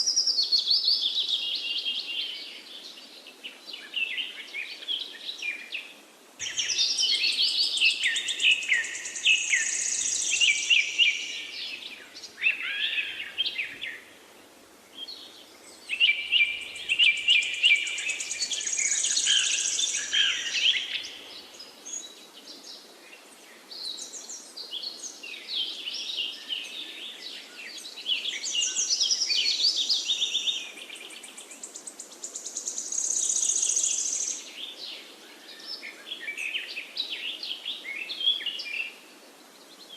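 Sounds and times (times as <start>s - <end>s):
faint steady hiss: 0.0s - 39.9s
songbirds singing: 0.0s - 39.9s.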